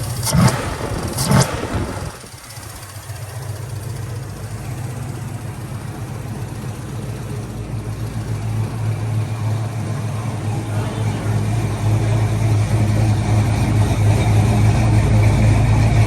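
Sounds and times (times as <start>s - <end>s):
car engine revving and idling: 0.0s - 16.0s.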